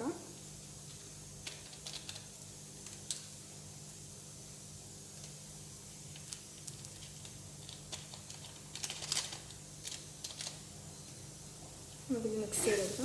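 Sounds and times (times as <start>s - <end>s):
seasoning sachet crinkling: 6.1s - 10.7s.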